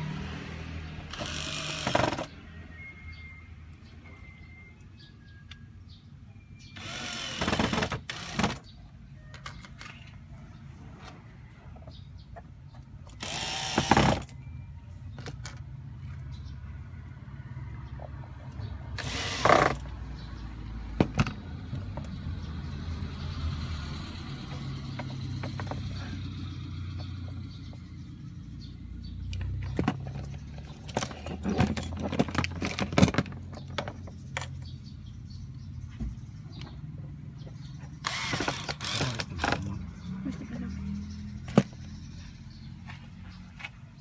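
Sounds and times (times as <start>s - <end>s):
power screwdriver whirring: 1.1s - 2.3s, 6.8s - 8.6s, 13.2s - 14.3s, 19.0s - 19.9s, 38.0s - 39.7s
clicks and knocks of handling parts: 9.3s - 10.2s, 15.1s - 16.2s, 29.3s - 34.7s.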